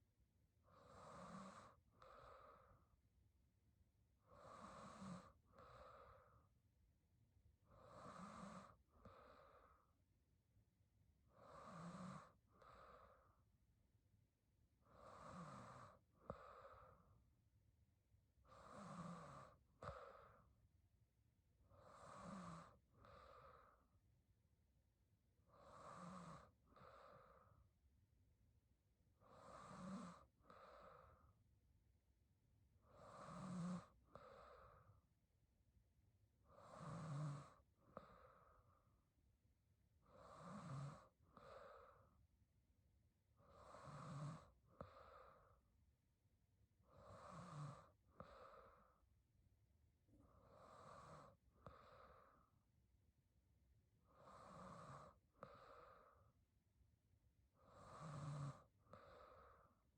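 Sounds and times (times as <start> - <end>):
woman snoring softly: 0.6 - 3.1, 4.1 - 6.6, 7.5 - 10.1, 11.1 - 13.6, 14.6 - 17.4, 18.3 - 20.7, 21.5 - 24.1, 25.2 - 27.9, 29.0 - 31.4, 32.6 - 35.2, 36.3 - 42.4, 43.2 - 45.9, 46.8 - 49.2, 50.0 - 52.7, 53.8 - 56.6, 57.4 - 59.9.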